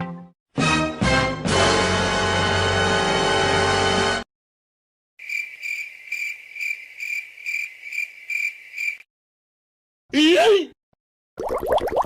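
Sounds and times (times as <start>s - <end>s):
cricket chirping: 5.2s - 9.1s.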